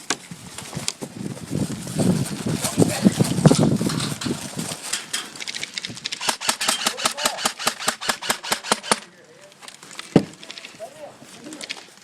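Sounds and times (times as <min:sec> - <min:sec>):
airsoft gun firing rapidly: 0:06.1 - 0:09.1.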